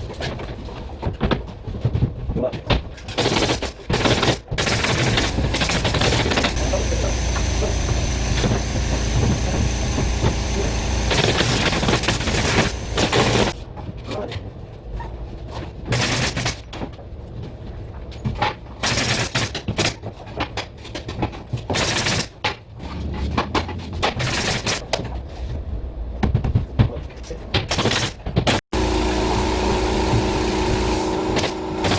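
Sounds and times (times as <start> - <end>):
nail gun firing: 3.1 - 13.6, 15.9 - 16.7, 18.8 - 20.0, 21.7 - 22.5, 24.2 - 24.8, 27.6 - 31.9
steady low hum: 4.9 - 13.6.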